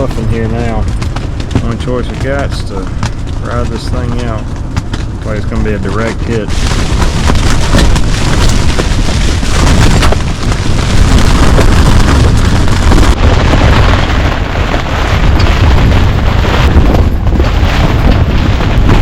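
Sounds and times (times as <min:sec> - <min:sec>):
wind gusts rumbling: 0:00.0 - 0:19.0
tent fabric flapping: 0:06.0 - 0:19.0.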